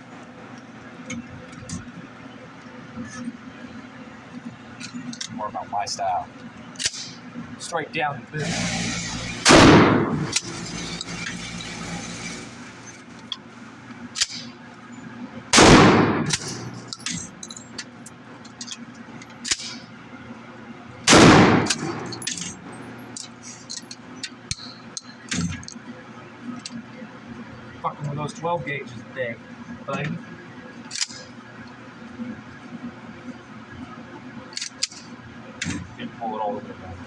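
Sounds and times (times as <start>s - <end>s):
shotgun shots echoing: 8.4s - 11.2s, 15.6s - 16.9s, 21.1s - 22.8s
shotgun action clicks and clacks: 15.6s - 17.2s, 21.1s - 23.3s.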